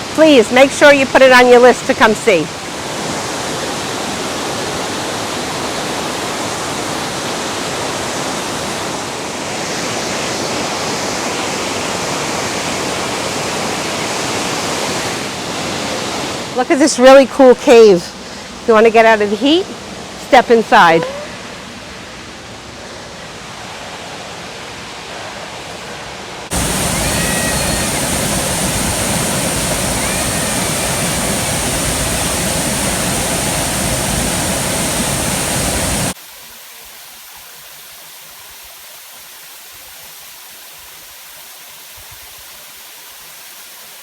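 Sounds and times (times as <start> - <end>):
waterfall rushing: 20.8 - 36.2.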